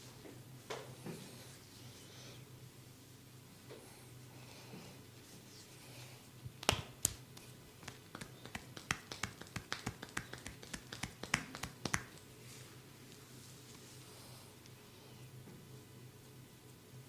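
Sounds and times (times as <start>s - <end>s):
sharp snapping clicks of hands: 6.6s - 12.2s.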